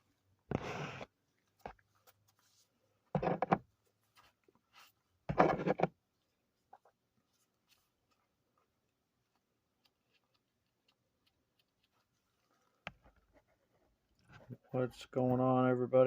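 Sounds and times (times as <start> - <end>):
scratchy handling noise: 0.5 - 5.9.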